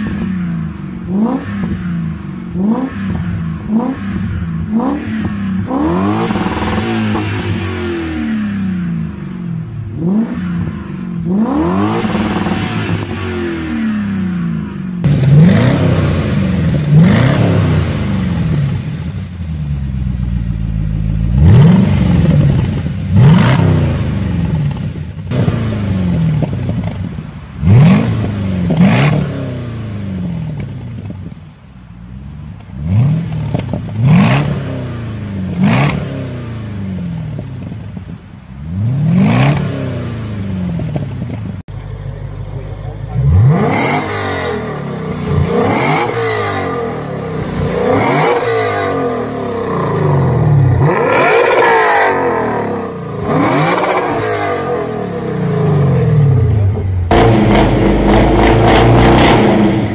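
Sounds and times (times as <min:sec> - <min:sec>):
engines revving: 0:00.0 - 0:31.2, 0:32.6 - 0:59.9
exhaust cracks: 0:15.0 - 0:18.9, 0:19.8 - 0:29.3, 0:30.4 - 0:31.6, 0:32.5 - 0:34.7, 0:40.7 - 0:59.9.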